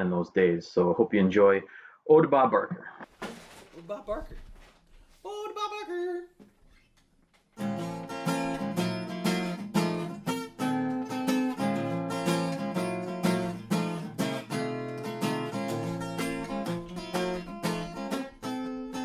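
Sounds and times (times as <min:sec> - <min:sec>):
acoustic guitar strumming: 0:07.6 - 0:19.0.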